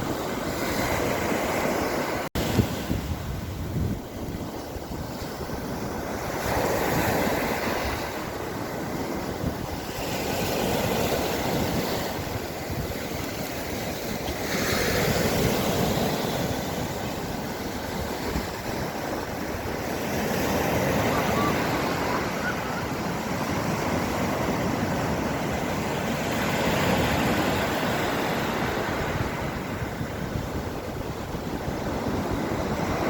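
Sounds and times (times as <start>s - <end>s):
sea waves breaking on shore: 0.0s - 33.0s
wind rumbling on microphone: 0.0s - 33.0s.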